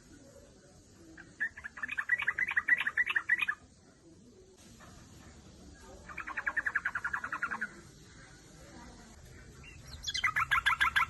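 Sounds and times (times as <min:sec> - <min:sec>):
bird chattering call: 0:01.2 - 0:03.6, 0:06.0 - 0:08.4, 0:09.4 - 0:11.0.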